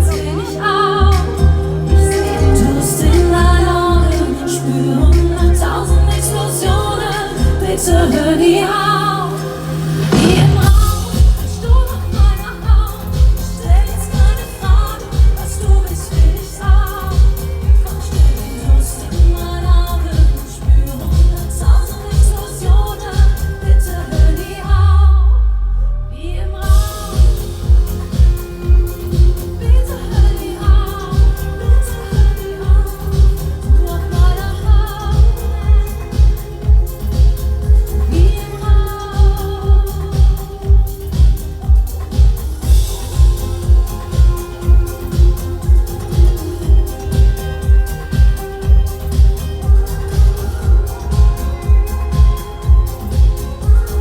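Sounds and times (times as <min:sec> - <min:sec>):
rushing sweep: 0:00.0 - 0:24.7
live dance pop music: 0:00.0 - 0:54.0
person singing: 0:00.0 - 0:54.0
kick drum beat: 0:10.5 - 0:24.7, 0:26.6 - 0:54.0.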